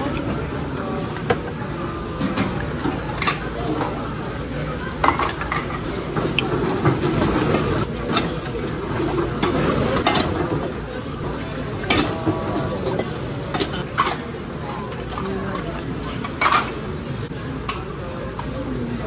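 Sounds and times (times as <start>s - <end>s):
murmur of chatter: 0.0s - 19.0s
dishes and cutlery clinking: 5.0s - 10.7s, 14.9s - 16.8s.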